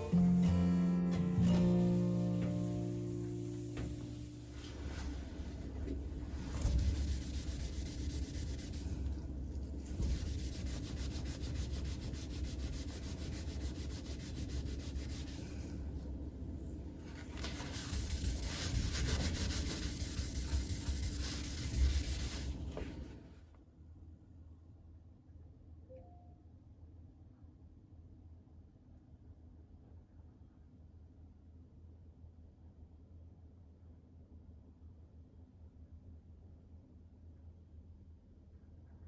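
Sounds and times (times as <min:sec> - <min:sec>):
scrubbing a hard surface: 0:06.3 - 0:15.8, 0:17.1 - 0:23.1.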